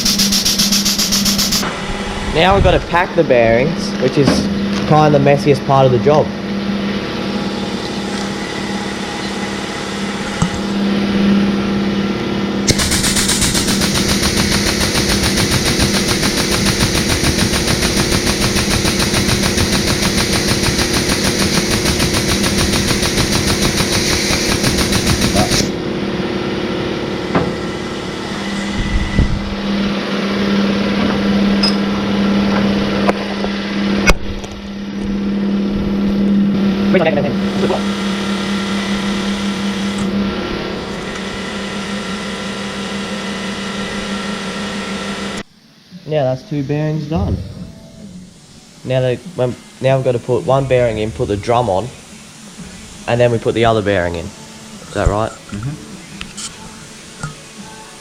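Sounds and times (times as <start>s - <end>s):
steady mechanical hum: 0.0s - 58.0s
air compressor clattering: 12.7s - 25.8s.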